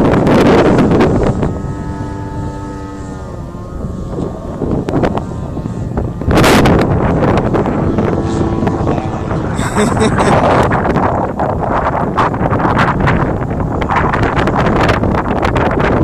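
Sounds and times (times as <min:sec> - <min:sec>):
model plane motor droning: 0:00.0 - 0:16.0
wind buffeting microphone: 0:00.0 - 0:16.0.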